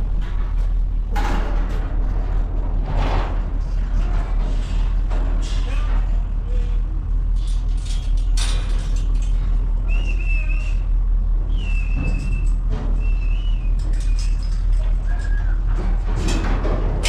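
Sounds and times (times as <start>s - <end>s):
truck engine rumbling: 0.0s - 17.0s.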